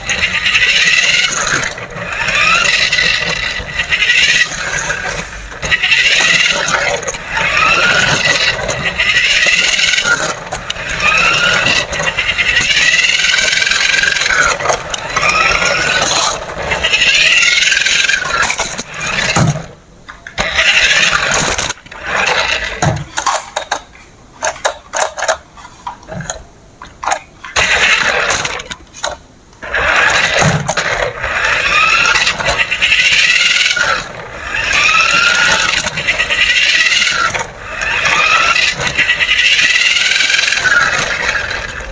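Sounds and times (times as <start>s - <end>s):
toy electric motors whirring: 0.0s - 41.9s.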